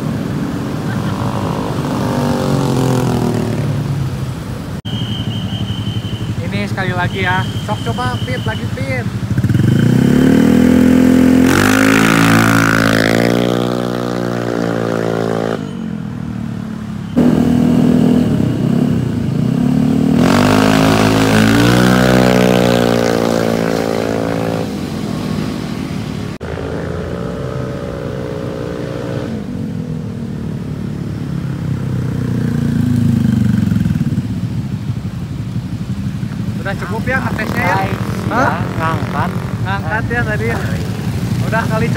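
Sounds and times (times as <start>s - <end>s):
scooter engine revving: 8.6s - 15.8s, 17.2s - 29.6s, 36.8s - 41.9s.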